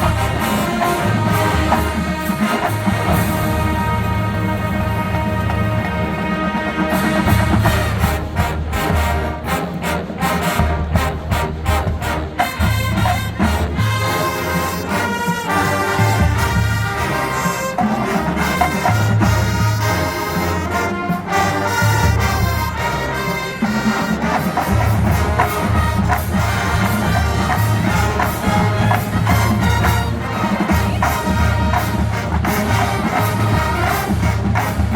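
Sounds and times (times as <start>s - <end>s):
marching band brass and drums: 0.0s - 34.9s.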